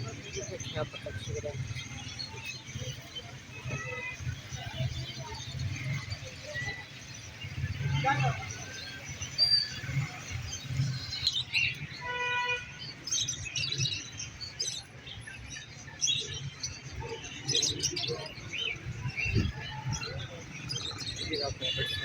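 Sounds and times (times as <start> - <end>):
small birds chirping: 0.0 - 12.0, 12.8 - 22.0.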